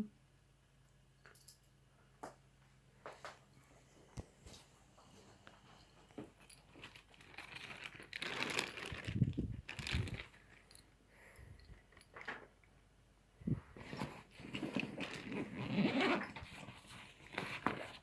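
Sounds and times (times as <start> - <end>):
paper rustling and crinkling: 6.6 - 10.7.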